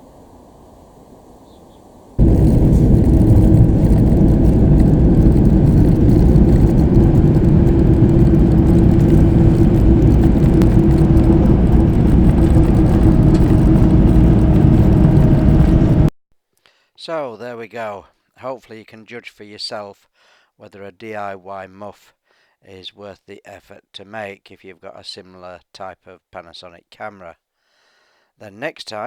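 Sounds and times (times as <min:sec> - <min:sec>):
van road and engine noise: 0:02.2 - 0:16.1.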